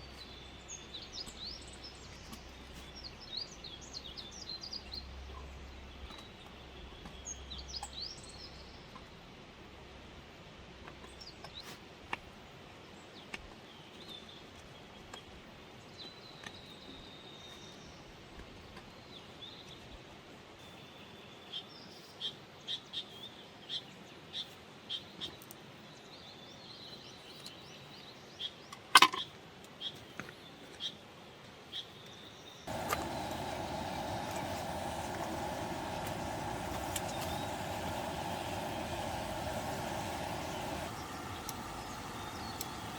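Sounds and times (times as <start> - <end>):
small birds chirping: 31.7 - 42.9
faint hiss: 32.7 - 42.9
loud steady noise: 32.7 - 42.9.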